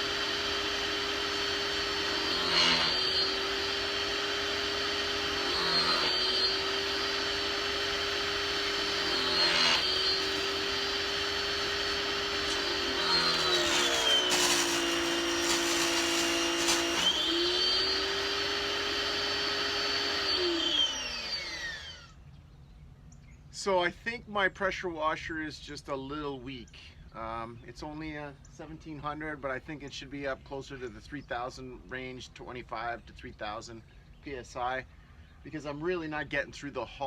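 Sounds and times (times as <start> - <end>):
pressure washer motor whine: 0.0 - 22.1
hissing water jet: 6.8 - 18.3.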